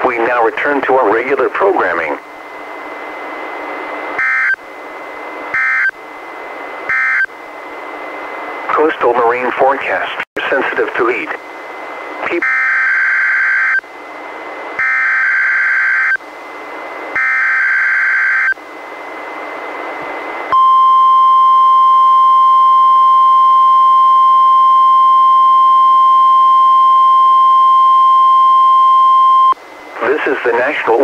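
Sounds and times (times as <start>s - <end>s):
radio static hiss: 0.0s - 5.4s, 8.0s - 14.8s, 29.6s - 31.0s
steady alarm tone: 4.2s - 4.6s, 5.5s - 6.0s, 6.9s - 7.3s, 12.2s - 13.9s, 14.7s - 16.2s, 17.1s - 18.6s, 20.5s - 29.6s.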